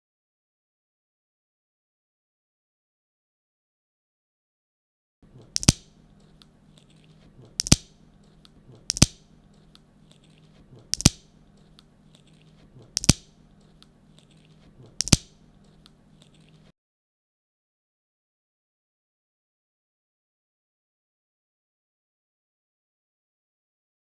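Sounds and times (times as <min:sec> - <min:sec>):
low steady hum: 0:05.2 - 0:16.7
sharp double clicks: 0:05.4 - 0:06.5, 0:07.4 - 0:09.3, 0:10.9 - 0:11.4, 0:12.9 - 0:13.7, 0:15.0 - 0:16.0.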